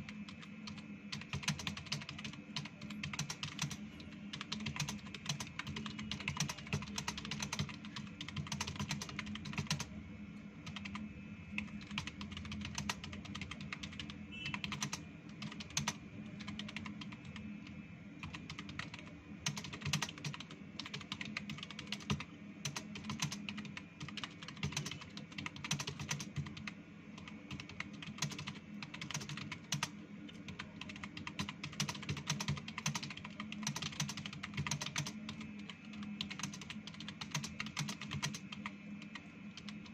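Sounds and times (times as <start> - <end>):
fast keyboard typing: 0.0 - 9.9, 10.6 - 17.4, 18.2 - 39.9.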